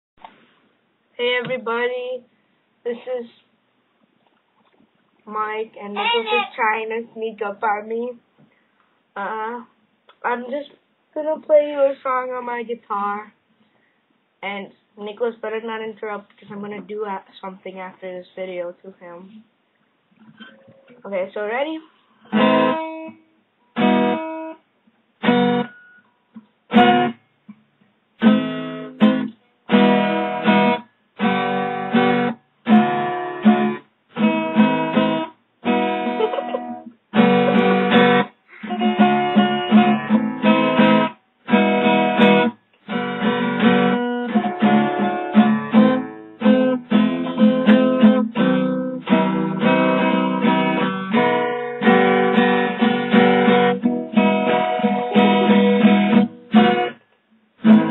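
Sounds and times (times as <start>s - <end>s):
guitar strumming chords: 22.3s - 23.2s, 23.8s - 24.6s, 25.2s - 25.8s, 26.7s - 27.2s, 28.2s - 57.0s, 57.6s - 57.9s.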